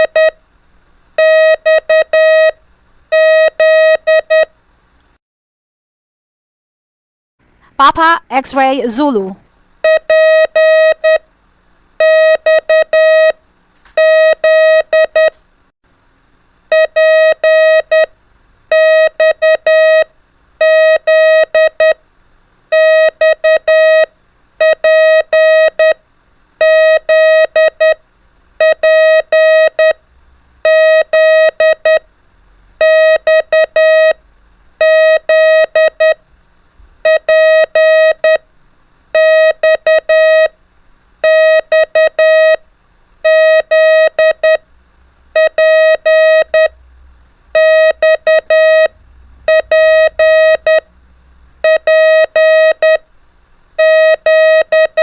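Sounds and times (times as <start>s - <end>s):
morse code beeps: 43.3s - 44.6s, 45.4s - 46.7s, 47.6s - 48.9s, 49.5s - 50.8s, 51.6s - 53.0s, 53.8s - 55.0s.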